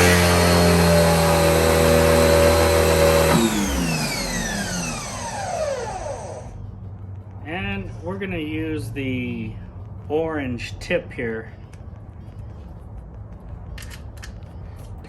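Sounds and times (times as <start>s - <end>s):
pressure washer motor and pump: 0.0s - 6.6s.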